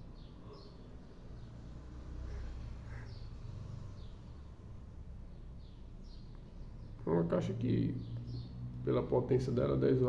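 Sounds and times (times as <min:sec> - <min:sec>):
faint bird chirps: 0:00.0 - 0:04.6.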